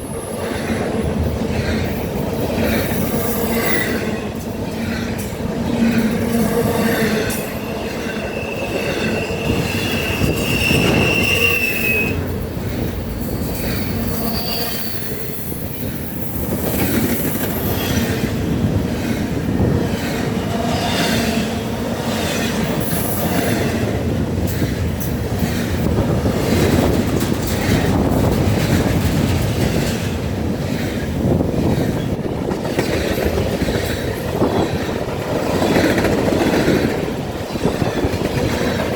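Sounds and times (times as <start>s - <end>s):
freight train rolling on rails: 0.0s - 38.9s
steel wheel squeal: 7.0s - 12.2s, 13.6s - 16.4s.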